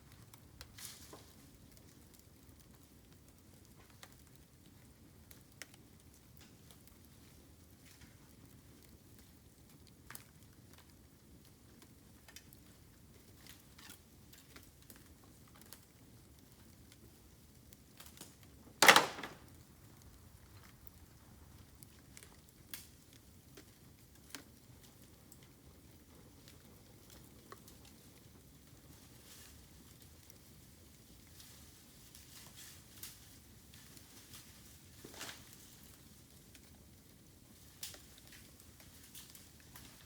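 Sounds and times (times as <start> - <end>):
bamboo crackling in fire: 0.0 - 40.0
loud pop of bamboo bursting: 18.8 - 19.5.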